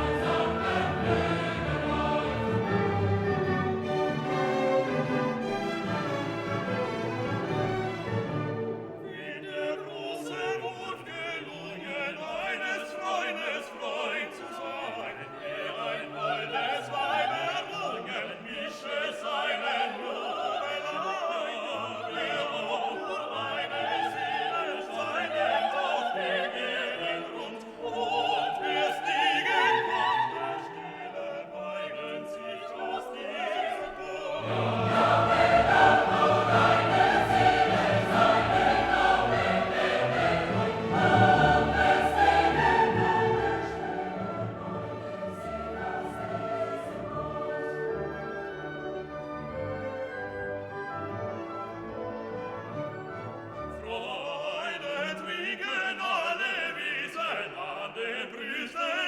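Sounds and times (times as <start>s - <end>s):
orchestra playing: 0.0s - 9.4s, 34.1s - 54.1s
operatic singing: 0.0s - 49.9s, 53.5s - 59.0s
choir singing: 0.0s - 59.0s.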